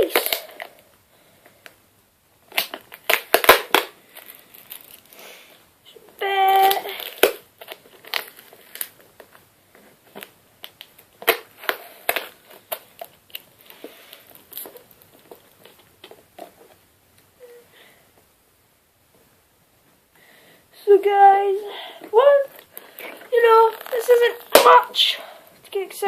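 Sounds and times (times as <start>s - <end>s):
cardboard and tape crunching: 2.5s - 5.2s, 6.2s - 16.7s, 22.5s - 25.1s.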